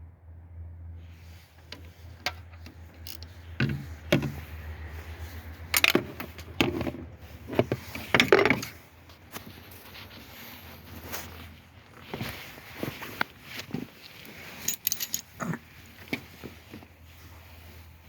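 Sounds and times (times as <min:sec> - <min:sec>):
metal tools clanking: 0:01.7 - 0:04.5, 0:05.6 - 0:07.0, 0:14.6 - 0:15.4.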